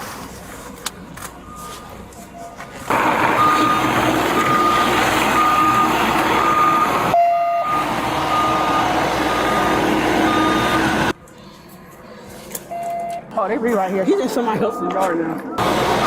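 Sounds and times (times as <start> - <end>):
reversing alarm beeping: 1.4 - 11.2, 12.7 - 13.3, 14.6 - 16.0
diesel engine running: 2.7 - 11.2, 15.6 - 16.0.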